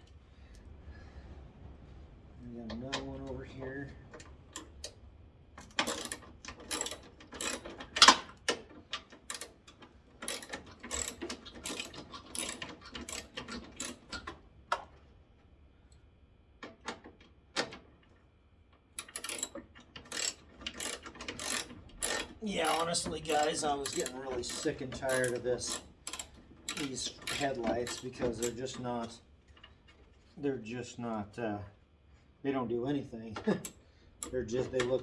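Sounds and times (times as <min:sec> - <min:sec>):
ratchet wrench clicking: 0:05.8 - 0:08.1, 0:10.2 - 0:14.0, 0:19.0 - 0:28.6.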